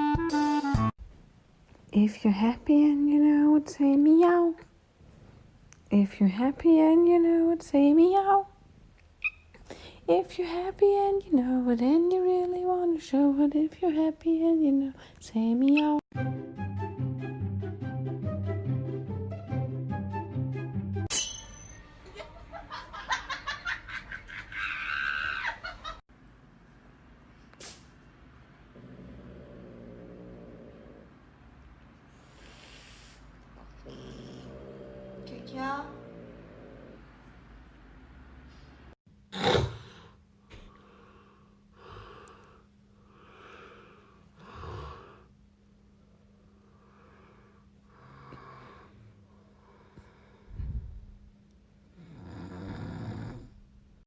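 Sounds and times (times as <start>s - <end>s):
noisy breathing: 32.1s - 33.4s, 39.8s - 45.4s, 46.6s - 51.0s
steady low hum: 40.2s - 52.3s.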